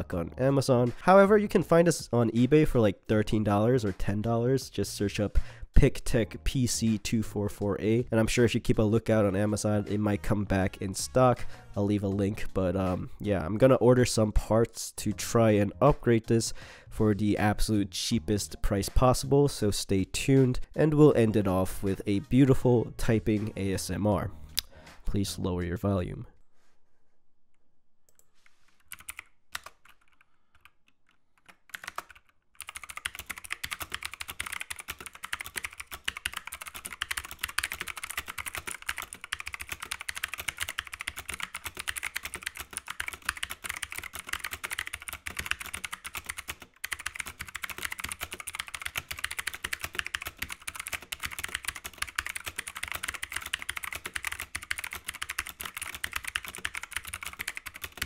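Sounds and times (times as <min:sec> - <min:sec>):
mechanical keyboard typing: 0:28.8 - 0:30.8, 0:31.4 - 0:58.0.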